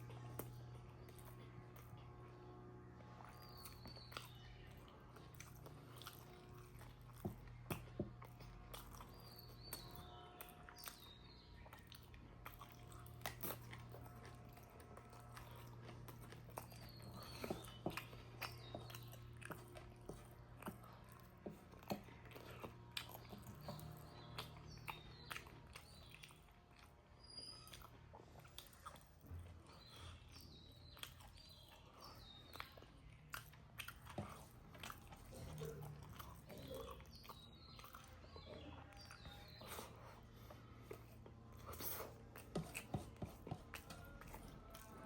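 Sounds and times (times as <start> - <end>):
person chewing: 0.0 - 2.4, 3.0 - 45.0
steady low hum: 0.0 - 27.2.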